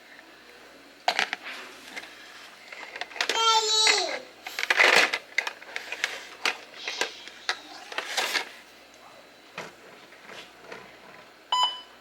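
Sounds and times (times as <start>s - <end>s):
short electronic beep: 11.5s - 11.9s.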